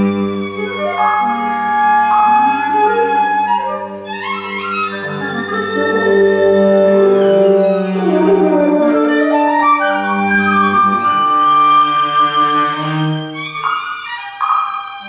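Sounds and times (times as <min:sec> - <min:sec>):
bowed strings: 0:00.0 - 0:14.3
flute notes: 0:00.0 - 0:15.0.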